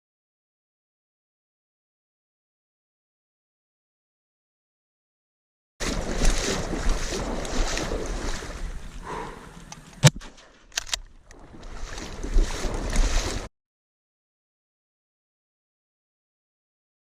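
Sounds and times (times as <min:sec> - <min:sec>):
water noise: 0:05.8 - 0:13.5
sharp clicks: 0:09.6 - 0:11.4.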